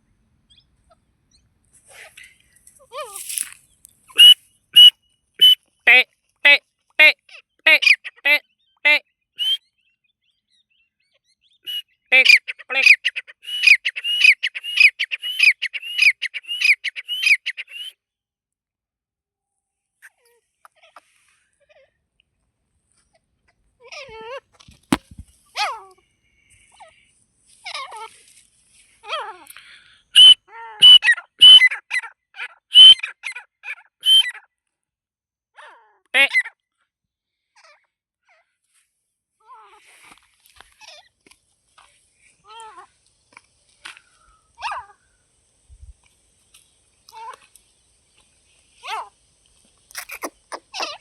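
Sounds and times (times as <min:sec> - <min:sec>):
francolin shrill calls: 0:04.1 - 0:05.6, 0:09.4 - 0:09.7, 0:11.6 - 0:17.9, 0:30.2 - 0:34.4, 0:49.9 - 0:51.0.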